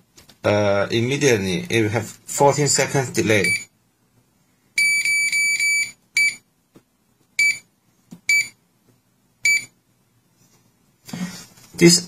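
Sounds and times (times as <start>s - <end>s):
alarm keypad beeping: 3.4s - 3.7s, 4.8s - 6.4s, 7.4s - 7.7s, 8.3s - 8.6s, 9.4s - 9.7s.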